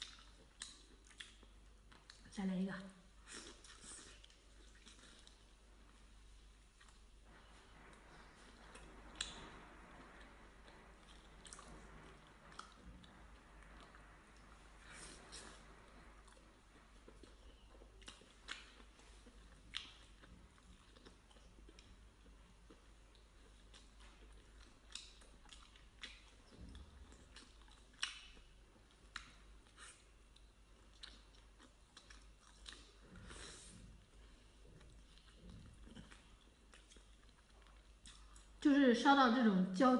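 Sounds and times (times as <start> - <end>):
person chewing food: 0.0 - 2.2, 3.1 - 38.6
soft crunches: 3.2 - 28.4.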